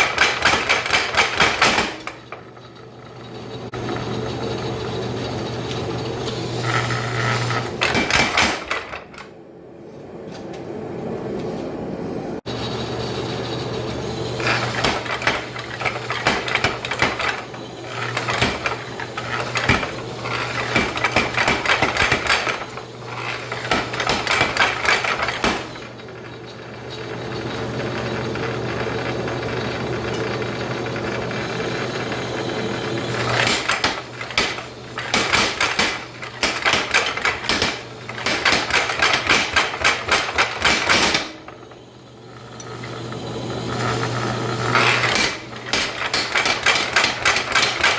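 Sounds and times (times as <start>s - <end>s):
power hammer pounding steel: 0.0s - 2.5s, 12.5s - 28.7s, 31.5s - 41.7s, 44.8s - 47.9s.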